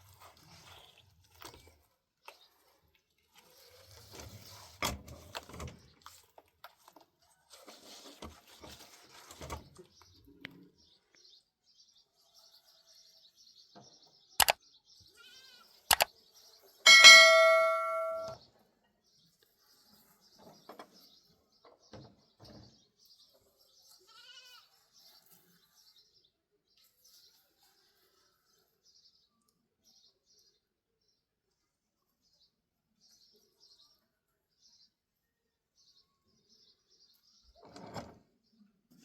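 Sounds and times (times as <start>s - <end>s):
faint animal bleats: 15.1s - 15.8s, 24.0s - 24.7s
faint high chirping: 16.9s - 18.4s
loud ringing strike: 16.9s - 18.4s.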